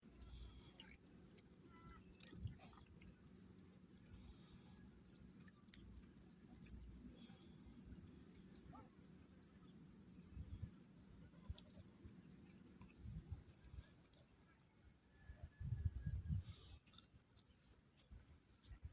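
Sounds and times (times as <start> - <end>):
faint bird chirps: 0.2 - 2.9.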